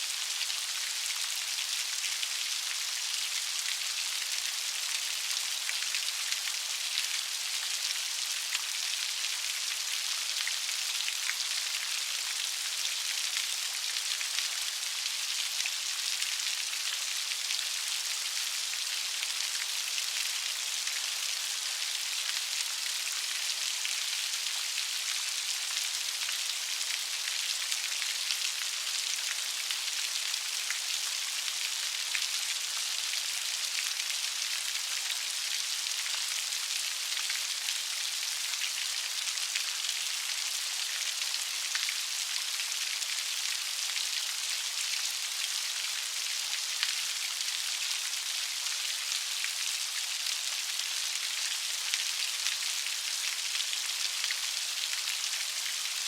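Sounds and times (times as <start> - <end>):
light rain falling: 0.0 - 56.0.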